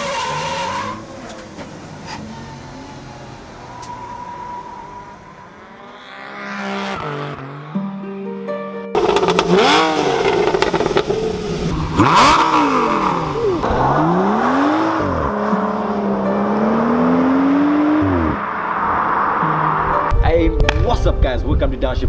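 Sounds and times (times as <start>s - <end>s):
car engines revving: 0.0s - 8.0s, 9.0s - 20.2s.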